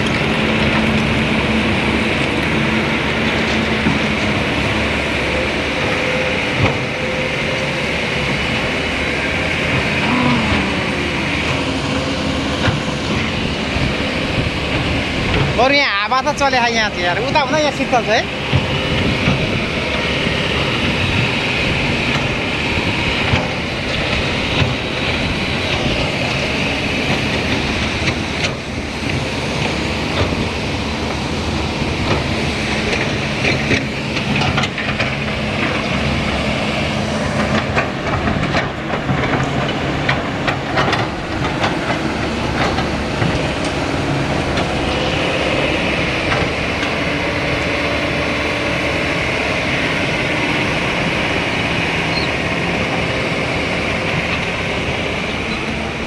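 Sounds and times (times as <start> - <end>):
excavator diesel engine: 0.0 - 56.0
hydraulic hissing whine: 2.7 - 15.8.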